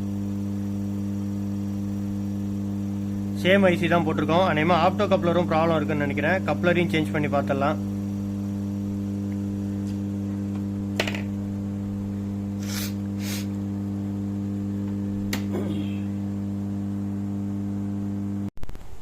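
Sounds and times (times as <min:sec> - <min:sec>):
electrical mains hum: 0:00.0 - 0:19.0
short hisses: 0:12.5 - 0:13.6.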